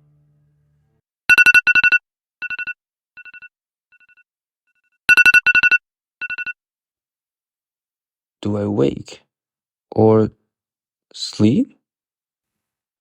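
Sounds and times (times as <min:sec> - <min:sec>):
electronic beeping tone: 0:01.3 - 0:04.2, 0:05.1 - 0:06.6.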